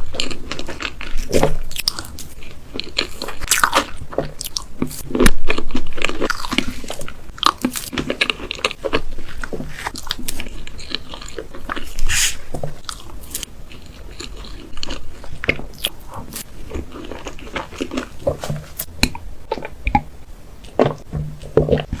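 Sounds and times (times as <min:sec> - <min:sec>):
person chewing cake: 0:00.0 - 0:22.0.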